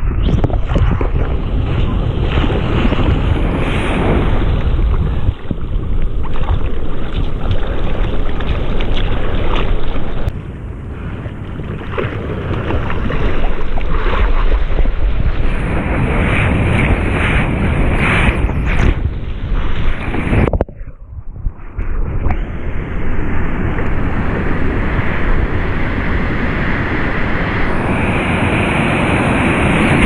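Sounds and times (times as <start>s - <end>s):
wind buffeting microphone: 0.0s - 30.0s
ocean water sloshing and splashing: 0.2s - 20.6s.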